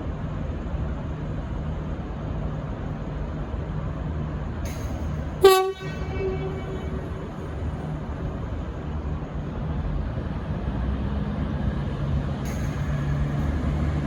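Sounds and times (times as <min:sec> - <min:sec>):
diesel railcar rumble: 0:00.0 - 0:14.0
train horn blast: 0:05.4 - 0:08.1.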